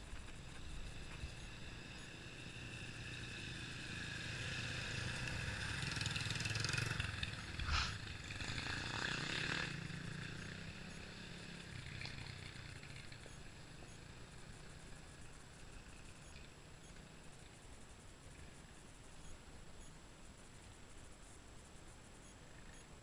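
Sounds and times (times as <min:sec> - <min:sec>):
motorcycle passing by: 0:00.2 - 0:16.4.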